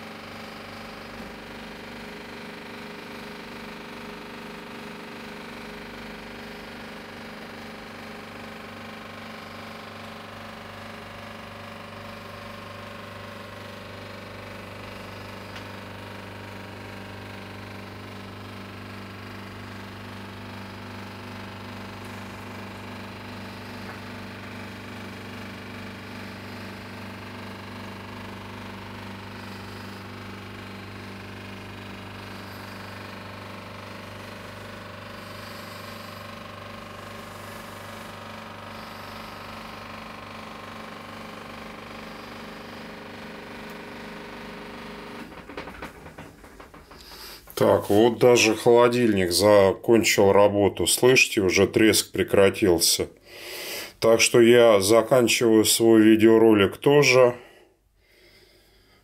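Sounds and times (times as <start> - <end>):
refrigerator compressor humming: 0.0 - 59.0
crackling rattle: 45.1 - 47.6.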